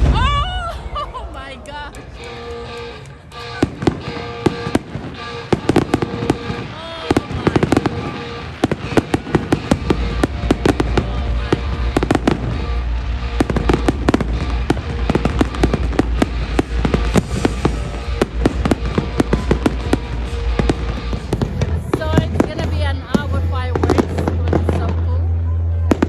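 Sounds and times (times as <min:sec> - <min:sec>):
deep rumble of booms: 0:00.0 - 0:01.2
fireworks crackling and popping: 0:00.0 - 0:25.2
music: 0:00.0 - 0:26.0.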